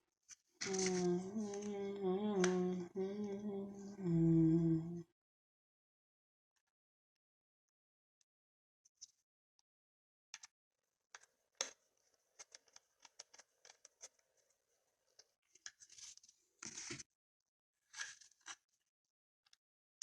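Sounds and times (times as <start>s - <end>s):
rustling handling noise: 0.6s - 1.6s.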